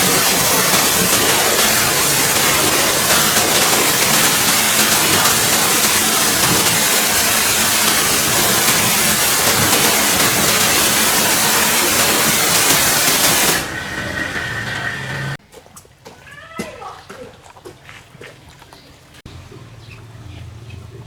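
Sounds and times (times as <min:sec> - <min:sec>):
pressure washer spray hiss: 0:00.0 - 0:15.4
steady hum: 0:00.0 - 0:15.4.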